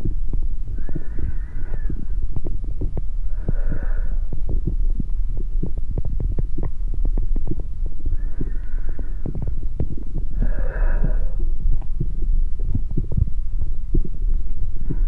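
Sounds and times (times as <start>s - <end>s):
amplified heartbeat throbbing: 0.0s - 15.0s
breath-like hiss: 10.4s - 11.4s.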